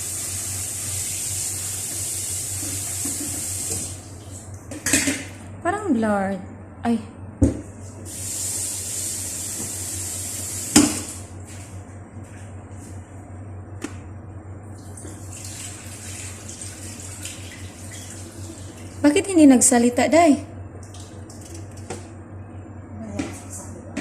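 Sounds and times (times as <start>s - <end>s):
water running from a tap: 0.0s - 4.0s, 8.1s - 10.8s, 14.8s - 19.1s.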